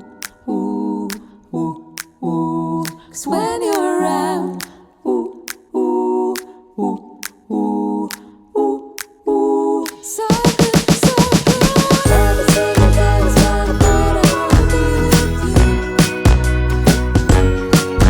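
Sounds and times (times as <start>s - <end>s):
wordless hummed vocal: 0.5s - 16.0s
light click beat: 2.0s - 2.2s.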